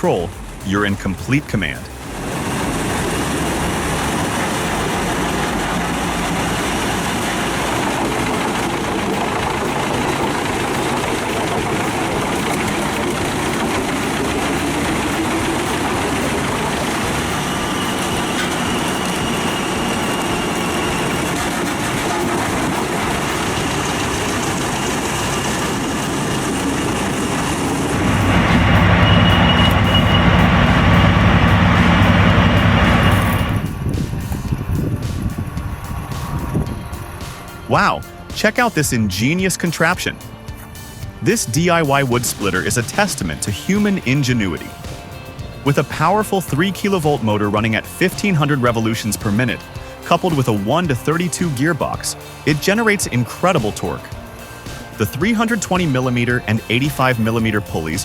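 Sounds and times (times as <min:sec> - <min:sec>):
deep engine sound: 0:00.0 - 0:39.4
wood chipper chipping wood: 0:01.9 - 0:39.9, 0:40.5 - 0:58.0.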